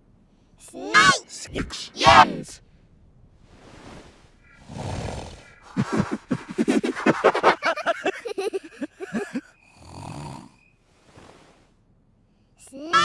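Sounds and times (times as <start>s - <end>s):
breathy draw: 0.6s - 2.6s, 5.6s - 9.4s
cartoon snoring: 4.7s - 10.6s.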